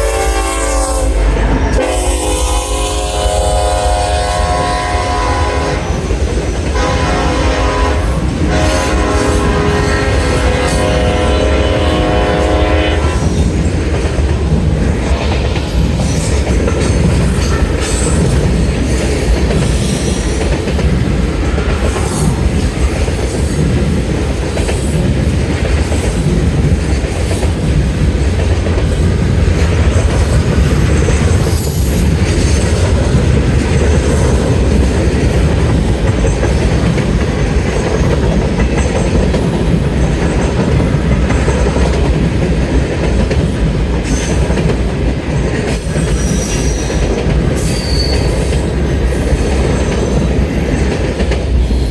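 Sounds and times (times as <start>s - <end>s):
freight train cars rumbling: 0.0s - 51.9s
high wheel squeal: 45.7s - 50.2s.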